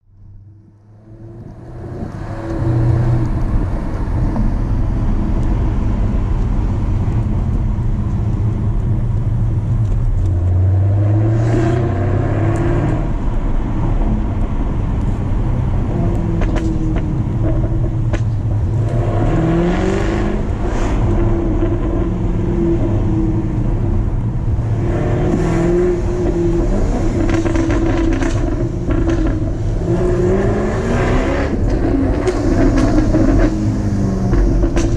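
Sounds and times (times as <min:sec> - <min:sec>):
car engine accelerating: 0:00.2 - 0:34.9
exhaust pops and crackles: 0:01.4 - 0:10.6, 0:16.0 - 0:19.0, 0:25.3 - 0:29.8, 0:31.4 - 0:34.9.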